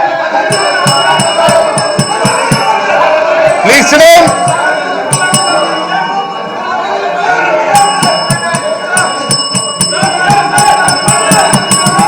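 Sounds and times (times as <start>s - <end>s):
electric bell ringing: 0.5s - 12.0s.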